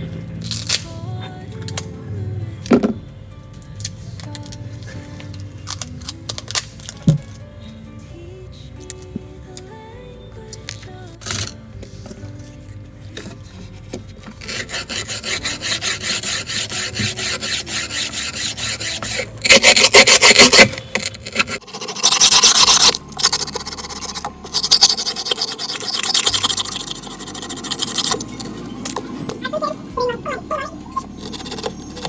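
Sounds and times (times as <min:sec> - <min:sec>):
harsh scrape: 0:14.4 - 0:20.8, 0:21.4 - 0:32.0
rhythmic scraping strokes: 0:14.4 - 0:20.8, 0:21.5 - 0:32.0.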